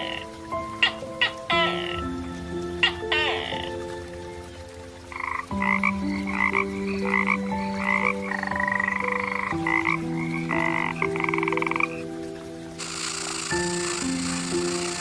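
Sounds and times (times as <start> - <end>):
frog croaking: 0.0 - 2.1, 2.8 - 3.9, 5.0 - 15.0.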